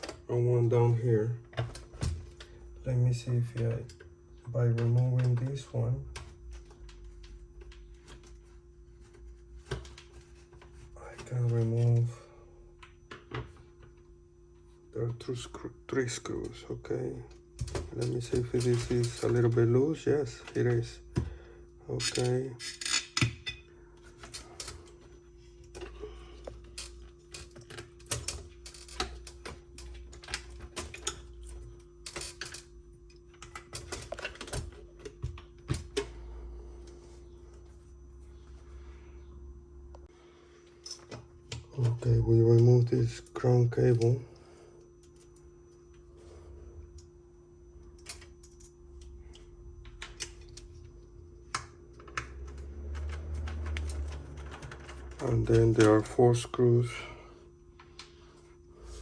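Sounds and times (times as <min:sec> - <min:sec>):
faint steady hum: 0:00.0 - 0:59.0
tools and parts clicking: 0:40.8 - 0:41.6.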